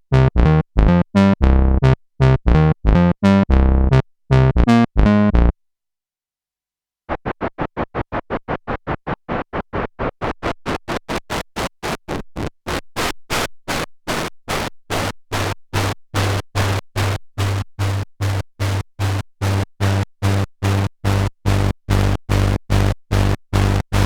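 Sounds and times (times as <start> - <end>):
synthesizer staccato notes: 0.1 - 5.5.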